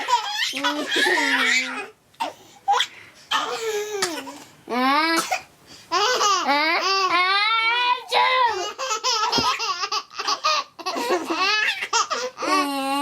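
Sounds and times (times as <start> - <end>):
children laughing: 8.6 - 12.2.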